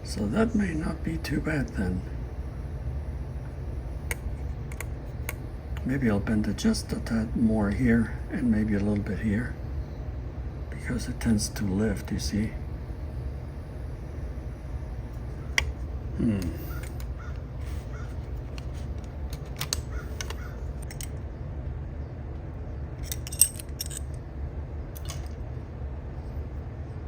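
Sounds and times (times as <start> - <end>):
steady low hum: 0.0 - 27.0
small metal and plastic clicks: 18.5 - 21.2.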